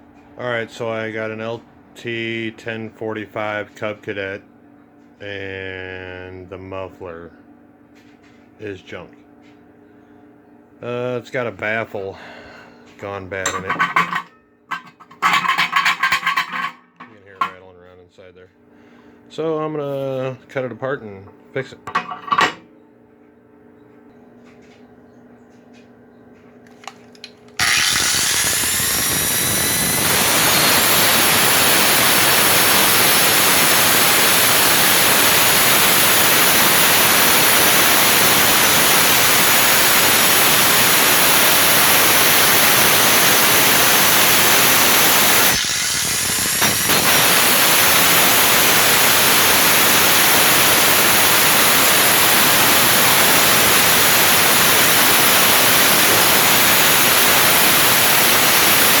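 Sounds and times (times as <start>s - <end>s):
power tool cutting steel: 27.6s - 59.0s.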